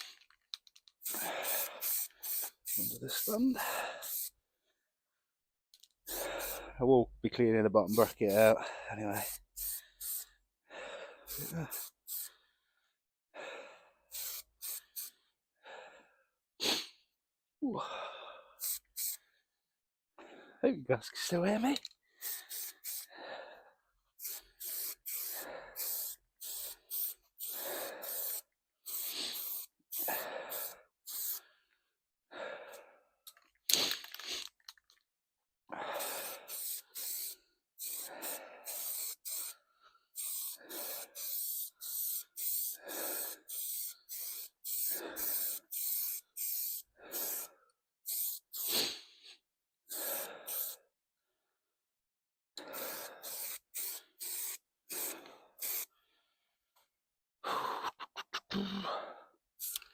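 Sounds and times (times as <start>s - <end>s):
aerosol can spraying: 1.0s - 4.4s, 9.1s - 10.3s, 11.3s - 12.3s, 14.1s - 15.1s, 18.6s - 19.2s, 22.2s - 23.1s, 24.2s - 31.4s, 36.0s - 49.0s, 49.9s - 50.8s, 52.7s - 55.9s, 59.6s - 59.9s.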